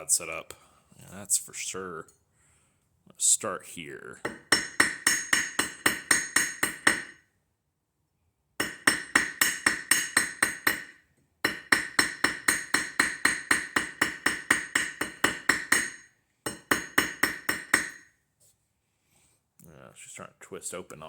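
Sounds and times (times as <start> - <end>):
hammer striking silver ring: 4.3 - 7.2, 8.6 - 18.1.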